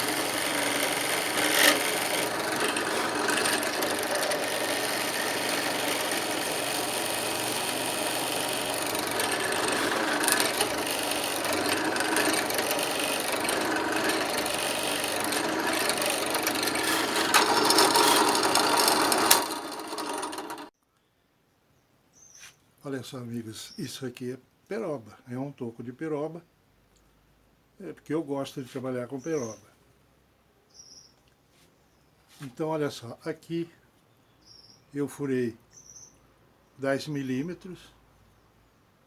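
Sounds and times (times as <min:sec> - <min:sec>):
electric drill boring into wood: 0:00.0 - 0:20.7.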